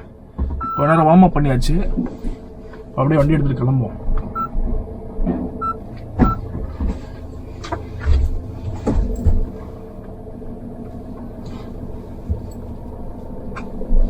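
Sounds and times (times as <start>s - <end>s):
short electronic beeps: 0.6s - 0.9s, 5.6s - 6.4s
car engine running: 2.4s - 13.9s.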